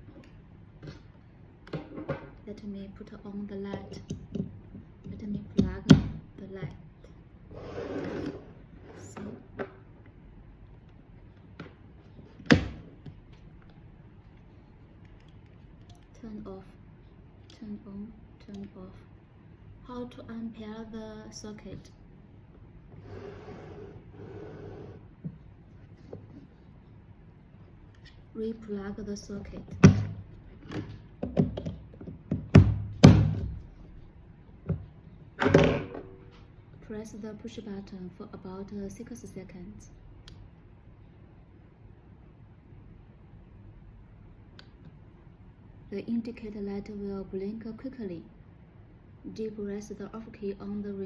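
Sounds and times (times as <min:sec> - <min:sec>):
loud knock of plug: 0:31.2 - 0:33.6.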